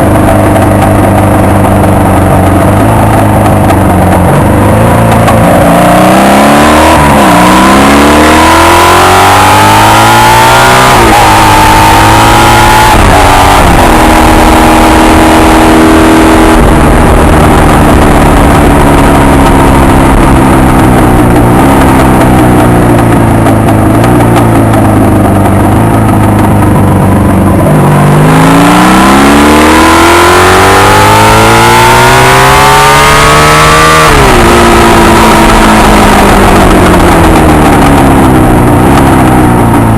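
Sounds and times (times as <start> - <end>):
motorcycle engine accelerating: 0.0 - 39.9.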